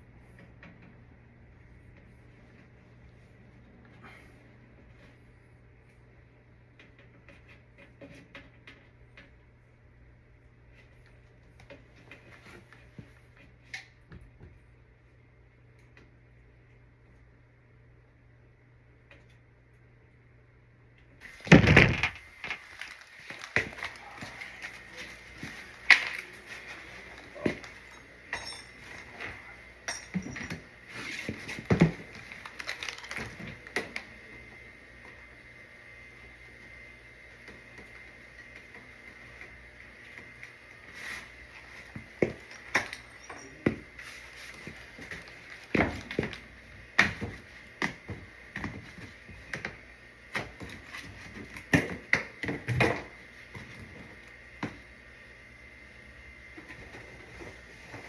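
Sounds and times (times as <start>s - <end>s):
objects knocking and clinking: 27.2s - 30.7s, 42.2s - 43.9s.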